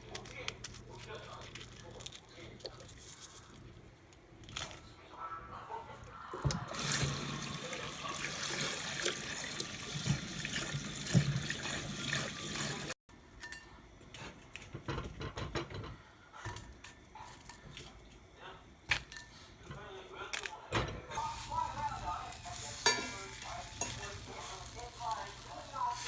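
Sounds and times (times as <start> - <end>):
water running from tap: 6.7 - 13.0
kitchen handling clicks and knocks: 14.6 - 16.0.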